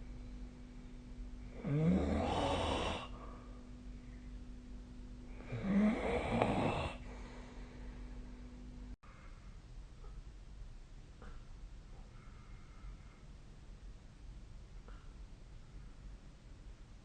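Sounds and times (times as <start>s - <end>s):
person snoring: 1.5s - 3.4s, 5.3s - 7.5s.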